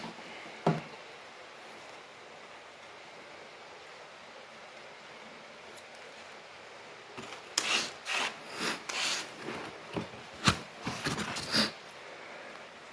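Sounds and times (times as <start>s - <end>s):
rubbing and scraping strokes: 7.2s - 11.8s.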